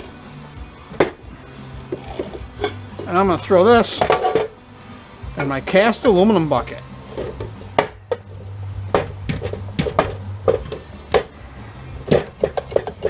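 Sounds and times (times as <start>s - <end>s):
scrap metal parts knocking: 3.9s - 4.5s, 7.1s - 11.4s, 12.0s - 13.0s.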